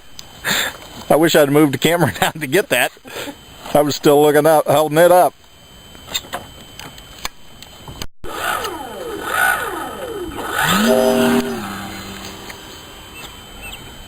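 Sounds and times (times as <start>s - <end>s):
model airplane motor whining: 8.3s - 12.8s.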